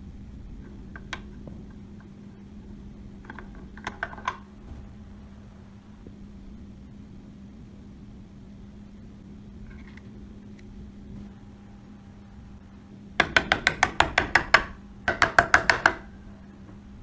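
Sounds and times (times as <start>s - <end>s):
low steady hum: 0.0s - 17.0s
hammer tapping on metal: 13.2s - 16.1s.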